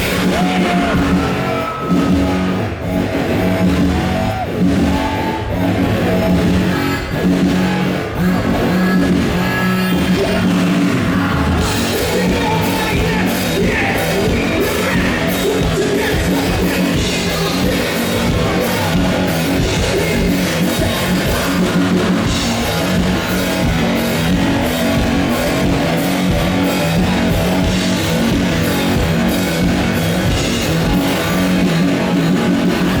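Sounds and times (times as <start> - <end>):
drum kit driving beat: 0.0 - 33.0
live rock band playing: 0.0 - 33.0.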